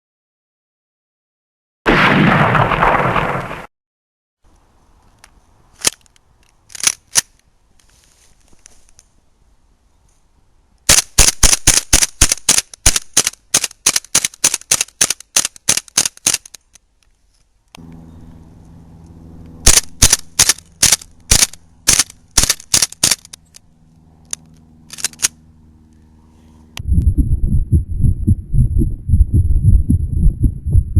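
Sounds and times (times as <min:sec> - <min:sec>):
steady low hum: 0:17.6 - 0:30.9.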